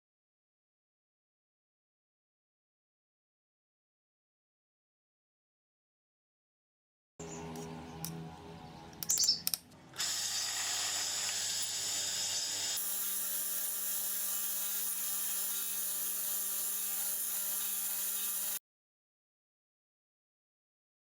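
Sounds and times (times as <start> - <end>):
sharp clicks: 9.0 - 9.8
power tool whining: 10.0 - 18.6.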